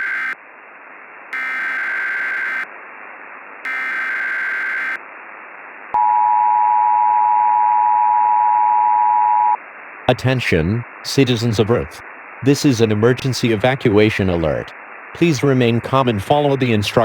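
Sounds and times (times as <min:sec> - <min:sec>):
screeching data bursts: 0:00.0 - 0:00.4, 0:01.4 - 0:02.7, 0:03.7 - 0:05.0
steady hiss: 0:10.1 - 0:17.0.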